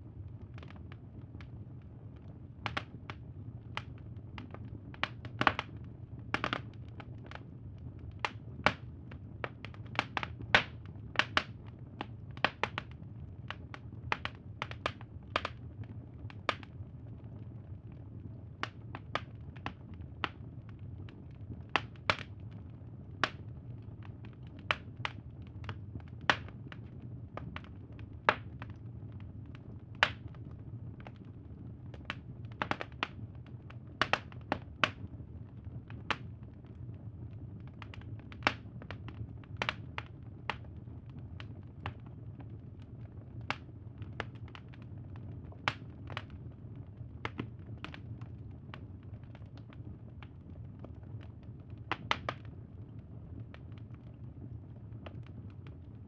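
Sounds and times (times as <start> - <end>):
low steady rumble: 0.0 - 56.0
wood fire popping and snapping: 0.1 - 56.0.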